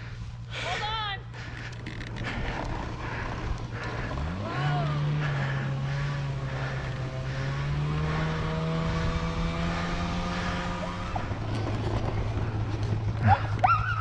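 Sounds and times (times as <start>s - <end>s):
engine running: 0.0s - 14.0s.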